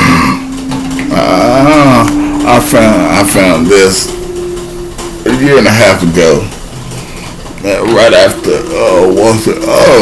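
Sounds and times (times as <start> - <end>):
person's drawn-out vocal sound: 0.0 - 5.6.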